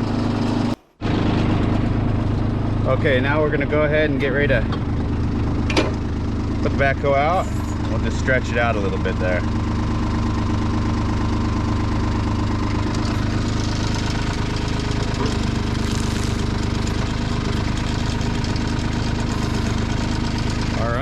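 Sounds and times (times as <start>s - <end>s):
diesel tractor engine running: 0.0s - 21.0s
hydraulic hiss: 13.2s - 20.3s.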